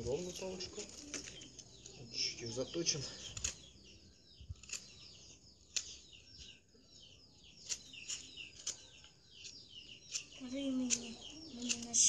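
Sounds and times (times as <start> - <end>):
small birds chirping: 0.0 - 12.0
sharp clicks: 3.3 - 3.7, 5.7 - 6.1, 7.6 - 12.0.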